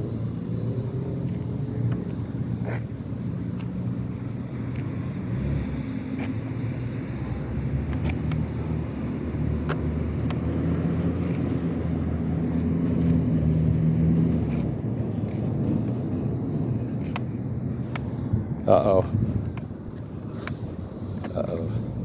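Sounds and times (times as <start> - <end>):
steady low hum: 0.0 - 22.0
gusty wind on microphone: 14.8 - 22.0.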